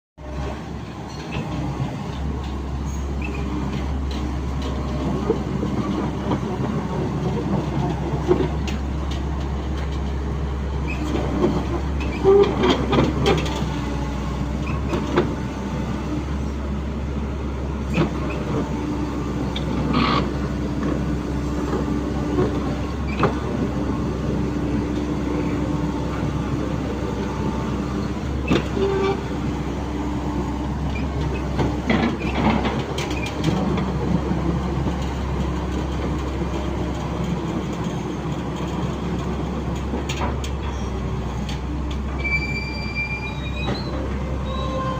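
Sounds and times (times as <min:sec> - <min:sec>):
excavator diesel engine running: 0:00.2 - 0:44.9
metallic clanks and squeals: 0:01.0 - 0:01.6, 0:02.8 - 0:05.4, 0:10.8 - 0:14.0, 0:14.6 - 0:15.2, 0:17.9 - 0:18.6, 0:19.5 - 0:20.4, 0:22.3 - 0:23.4, 0:27.2 - 0:29.5, 0:30.9 - 0:33.6, 0:40.4 - 0:41.1, 0:42.0 - 0:44.9.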